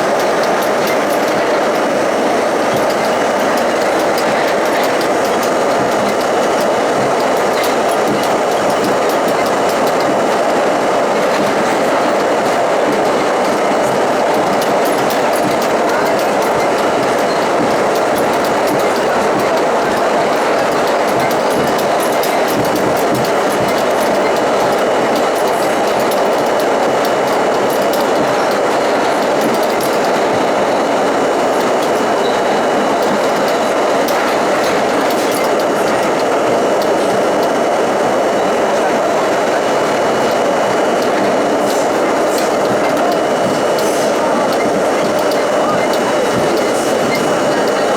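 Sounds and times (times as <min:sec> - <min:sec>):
subway train wheels rumbling: 0:00.0 - 0:47.9
wheels clicking over rail joints: 0:00.0 - 0:47.9.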